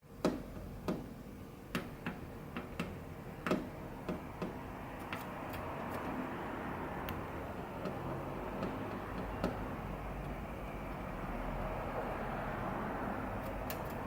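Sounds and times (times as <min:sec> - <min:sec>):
sharp taps on birdcage: 0:00.2 - 0:01.1, 0:01.7 - 0:06.1, 0:07.1 - 0:10.4.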